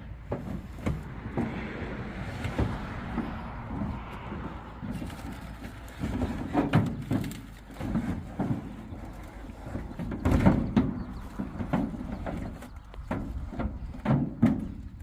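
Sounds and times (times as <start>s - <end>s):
knocks and clunks: 0.0s - 15.0s.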